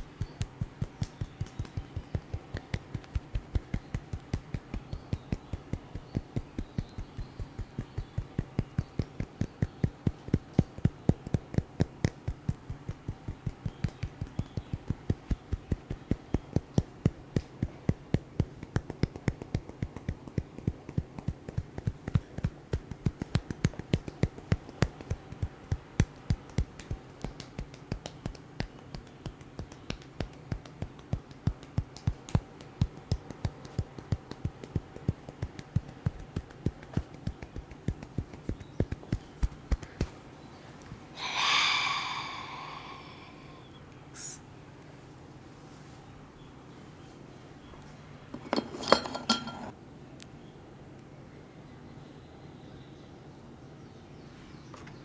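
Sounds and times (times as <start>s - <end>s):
faint steady drone: 0.0s - 48.2s
hands slapping head: 16.6s - 40.2s.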